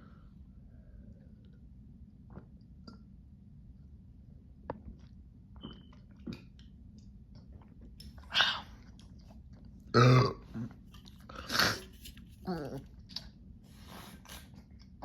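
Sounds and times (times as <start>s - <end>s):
loud burp: 9.9s - 10.7s.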